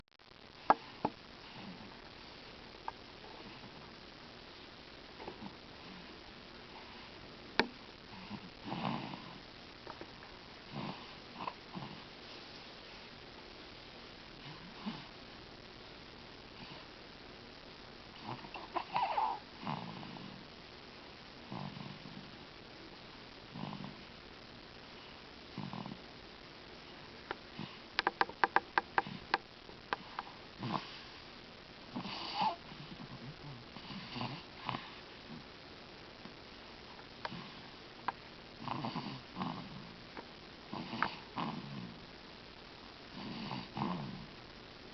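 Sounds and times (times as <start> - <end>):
faint snoring: 0.6 - 2.0, 5.2 - 9.5, 10.6 - 12.2, 14.4 - 15.2, 18.1 - 20.5, 21.4 - 22.5, 23.5 - 24.2, 25.0 - 26.1, 26.9 - 31.3, 31.9 - 35.5, 37.2 - 37.7, 38.6 - 40.0, 40.7 - 42.1, 43.1 - 44.4
short snorts: 10.7 - 12.1, 18.2 - 20.4, 31.9 - 35.1, 38.6 - 40.0, 40.7 - 42.0, 43.1 - 44.3.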